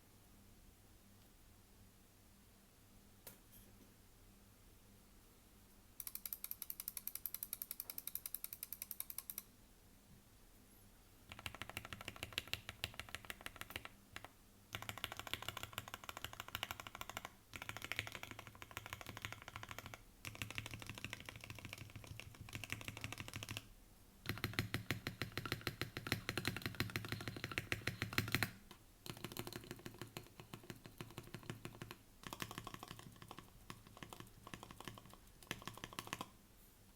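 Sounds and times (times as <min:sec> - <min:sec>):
mechanical keyboard clacks: 0:06.0 - 0:09.5, 0:11.3 - 0:36.3.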